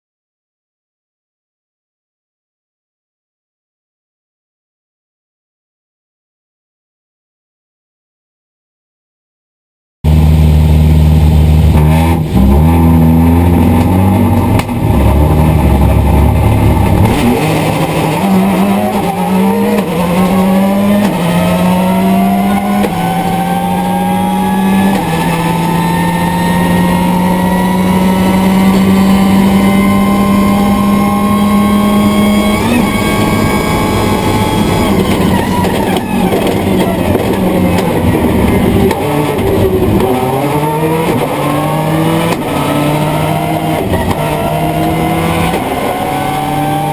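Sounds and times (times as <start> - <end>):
rally car engine driven hard: 10.0 - 46.9
whine climbing with speed: 10.1 - 46.9
gear changes: 11.2 - 46.9.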